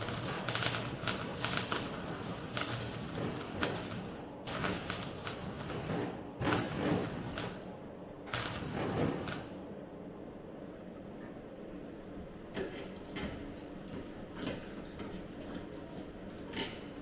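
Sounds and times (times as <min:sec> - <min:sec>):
welder crackling: 0:00.0 - 0:07.7, 0:08.3 - 0:09.6.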